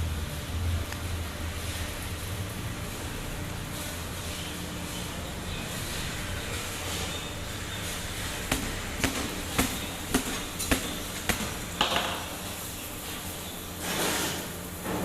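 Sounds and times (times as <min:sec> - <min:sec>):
sharp knocks: 0:08.5 - 0:12.3.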